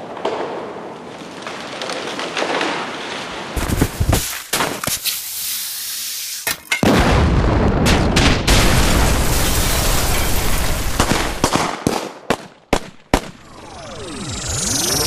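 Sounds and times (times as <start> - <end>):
explosion rumble: 6.8 - 11.4
gunshots: 6.8 - 13.5.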